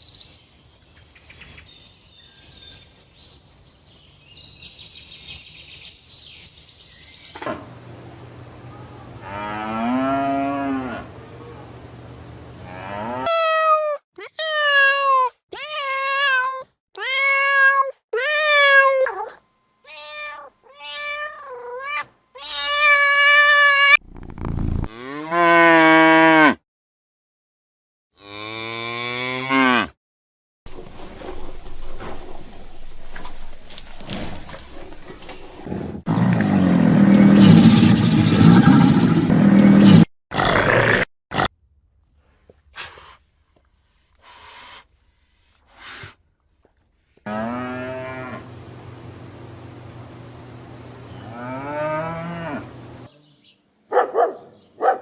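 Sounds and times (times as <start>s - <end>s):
cattle mooing: 9.2s - 11.1s, 47.3s - 48.5s, 51.2s - 52.8s.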